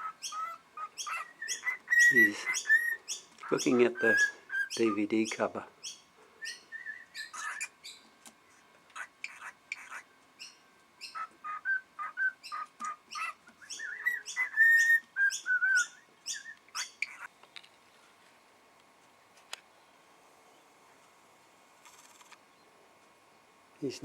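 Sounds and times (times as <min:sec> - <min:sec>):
cockatiel chirping and whistling: 0:00.1 - 0:05.0, 0:05.9 - 0:08.0, 0:09.2 - 0:17.3.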